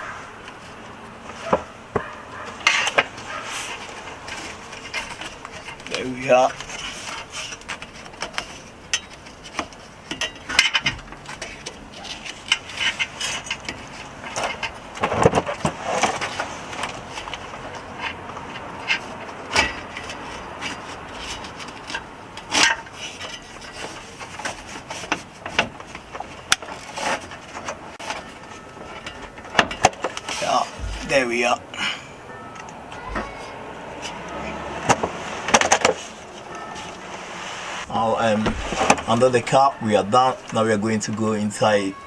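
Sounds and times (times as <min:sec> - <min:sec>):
scraping clatter: 0:00.5 - 0:31.3, 0:33.0 - 0:40.6
metal parts clicking and knocking: 0:04.3 - 0:17.4.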